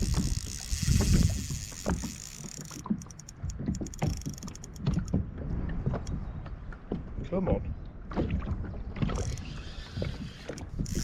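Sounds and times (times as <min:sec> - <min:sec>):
light irregular clicks: 0:00.0 - 0:05.2
water against hull: 0:00.0 - 0:11.0.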